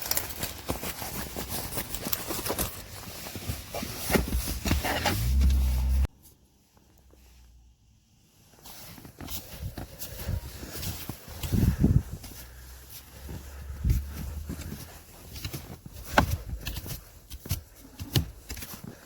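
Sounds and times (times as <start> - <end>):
low rumble: 5.1 - 6.1.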